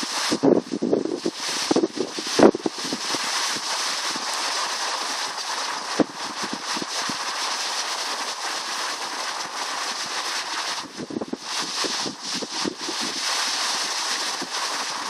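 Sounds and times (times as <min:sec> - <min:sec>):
wind buffeting microphone: 0:00.3 - 0:03.7, 0:10.8 - 0:13.2.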